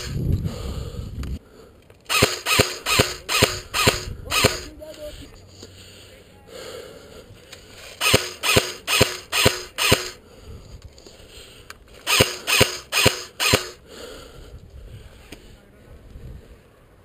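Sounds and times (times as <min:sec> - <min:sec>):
airsoft gun firing sharp cracks: 0:02.1 - 0:04.7, 0:08.0 - 0:10.2, 0:12.0 - 0:13.8.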